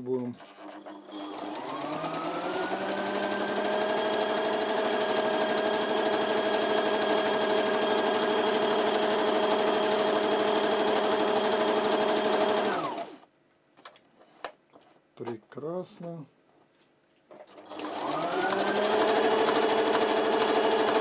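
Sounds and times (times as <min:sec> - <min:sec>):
sewing machine running: 0:00.4 - 0:13.2, 0:17.5 - 0:21.0.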